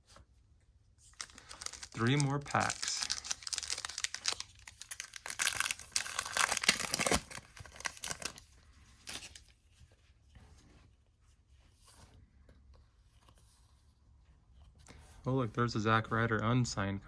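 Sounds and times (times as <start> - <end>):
wrapper tearing and crinkling: 1.1 - 9.4.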